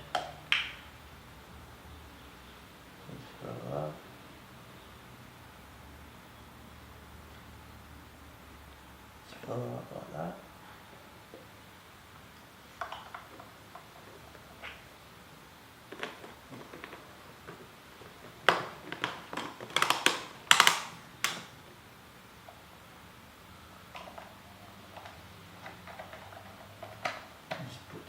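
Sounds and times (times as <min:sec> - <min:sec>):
plastic clicks and knocks: 0:18.5 - 0:21.5.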